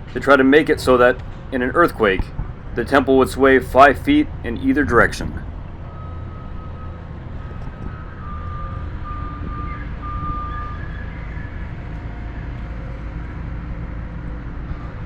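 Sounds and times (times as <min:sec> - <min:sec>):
heavy machinery rumbling: 0:00.0 - 0:15.0
backup alarm beeps: 0:05.9 - 0:11.8.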